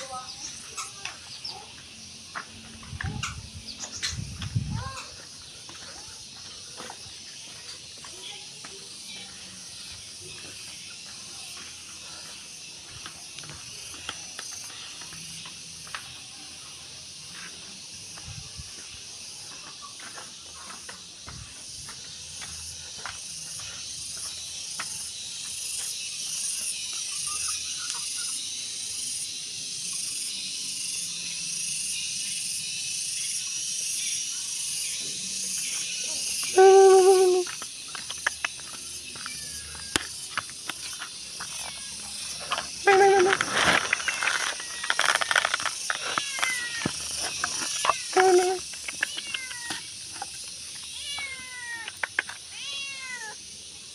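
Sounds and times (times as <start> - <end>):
crickets droning: 0.0 - 53.9
cat meowing: 36.6 - 37.5, 47.8 - 49.8, 50.9 - 51.9, 52.5 - 53.4.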